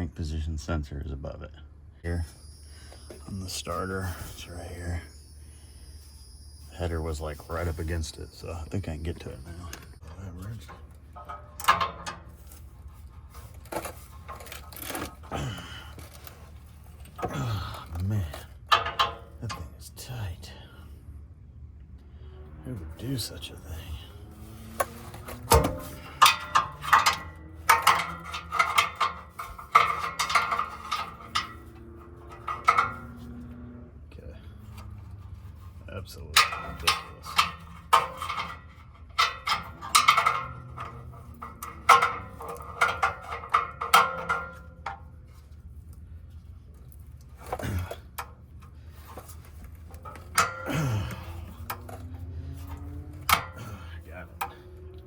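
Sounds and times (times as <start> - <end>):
metal tools clinking and scraping: 2.1 - 20.3, 23.0 - 55.0
wrench and ratchet clicking on metal: 24.7 - 33.2
sharp metal clank: 24.8 - 33.2.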